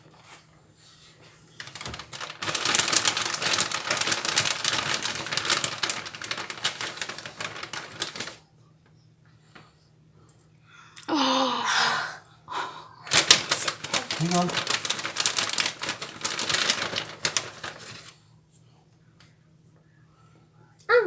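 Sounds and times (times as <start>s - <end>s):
shredded cheese sprinkling: 1.6s - 8.4s, 13.1s - 18.1s.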